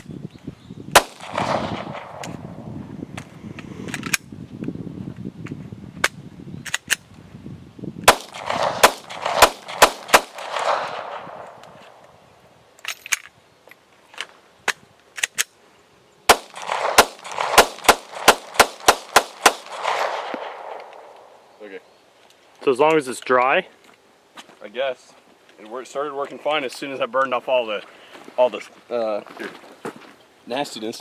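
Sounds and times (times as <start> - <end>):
pistol shots: 0.9 - 2.6, 8.1 - 12.0, 16.3 - 21.3.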